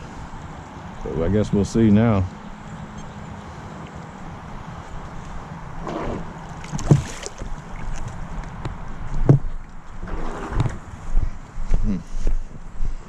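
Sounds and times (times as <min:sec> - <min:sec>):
sharp knocks: 0:06.7 - 0:07.3, 0:09.2 - 0:09.6.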